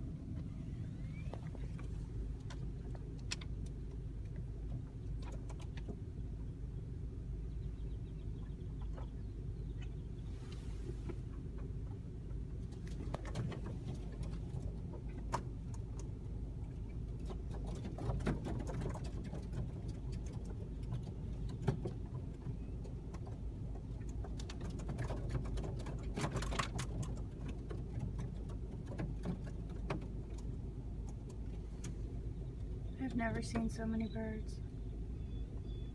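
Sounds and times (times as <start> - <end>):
steady low rumble: 0.0 - 26.2, 26.8 - 35.9
blackbirds calling: 6.4 - 10.6, 31.7 - 35.9.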